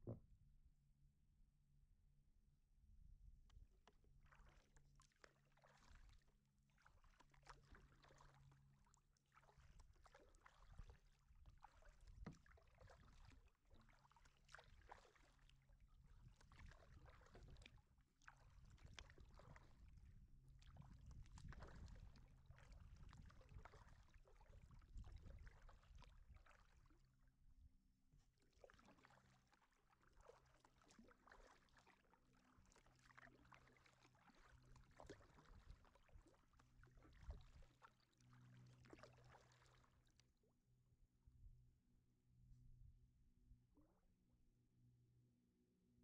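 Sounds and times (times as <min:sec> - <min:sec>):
paddle splashes and drips: 0:03.4 - 0:27.5, 0:28.1 - 0:40.4.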